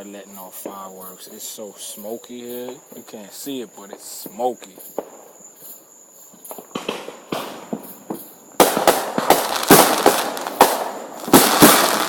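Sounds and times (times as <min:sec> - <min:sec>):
fireworks bangs and cracks: 0:03.9 - 0:05.4, 0:06.3 - 0:12.0.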